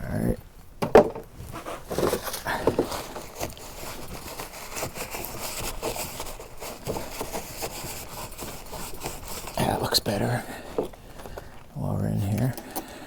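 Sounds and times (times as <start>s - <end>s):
toothbrush scrubbing plastic: 1.6s - 11.6s.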